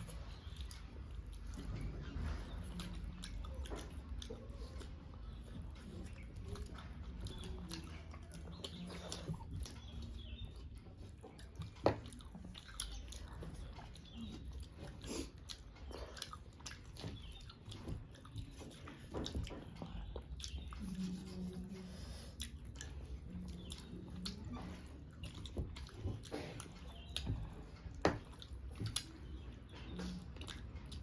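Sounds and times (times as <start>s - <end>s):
person chewing food: 0.0s - 31.0s.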